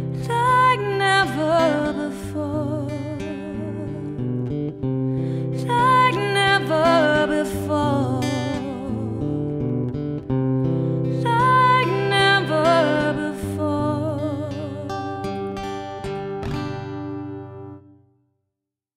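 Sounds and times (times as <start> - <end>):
woman singing a slow ballad: 0.0 - 9.9, 10.7 - 15.8
acoustic guitar: 0.0 - 18.2.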